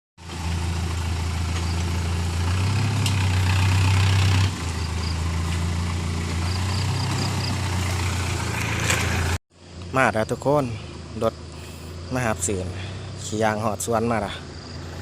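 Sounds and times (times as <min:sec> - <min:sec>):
vehicle engine idling: 0:00.2 - 0:15.0.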